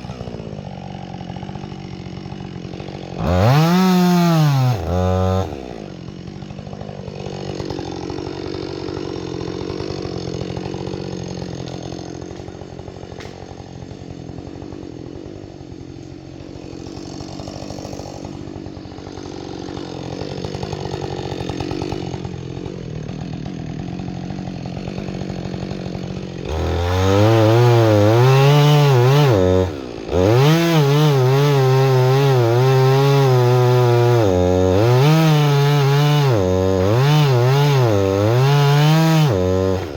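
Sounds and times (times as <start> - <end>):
chainsaw cutting wood: 0.0 - 39.9.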